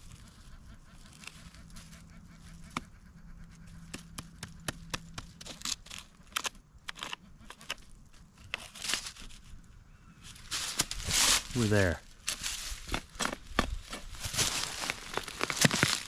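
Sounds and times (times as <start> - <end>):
footsteps crunching dry leaves: 10.3 - 16.0.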